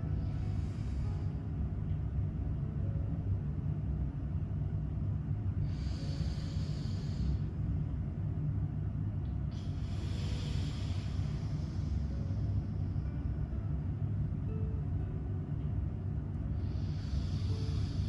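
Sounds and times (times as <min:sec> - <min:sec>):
steady low hum: 0:00.0 - 0:18.0
hissing nostril breaths: 0:05.7 - 0:07.5, 0:09.6 - 0:12.6, 0:16.6 - 0:18.0.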